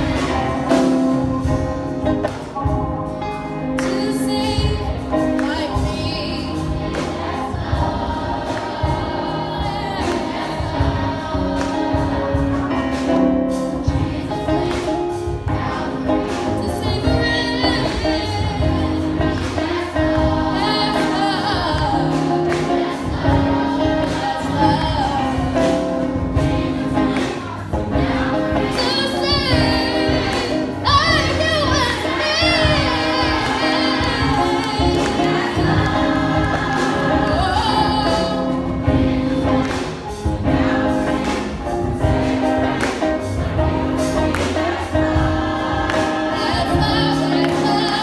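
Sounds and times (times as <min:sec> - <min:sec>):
band with steady beat: 0:00.0 - 0:48.0
choir singing gospel: 0:00.0 - 0:48.0.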